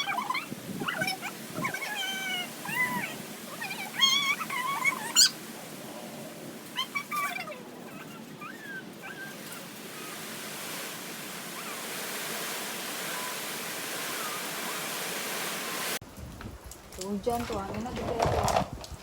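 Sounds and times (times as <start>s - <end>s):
rain in strong wind: 0.0s - 19.0s.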